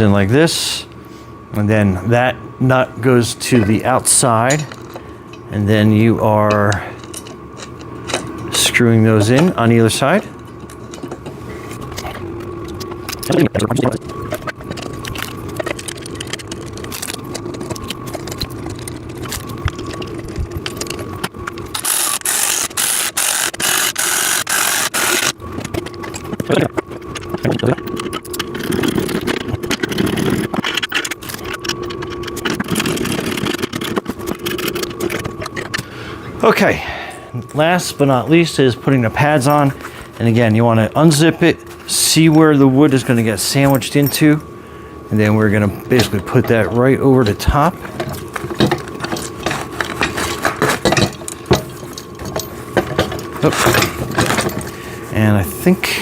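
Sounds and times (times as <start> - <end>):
metal parts clicking and rattling: 6.4 - 9.6, 10.4 - 35.9, 45.9 - 54.8
power drill running: 21.8 - 25.4.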